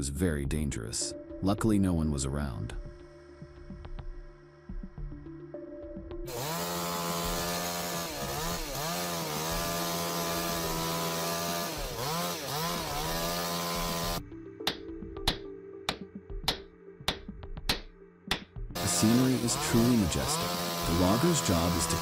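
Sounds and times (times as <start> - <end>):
chainsaw cutting wood: 6.2 - 14.2, 18.8 - 22.0.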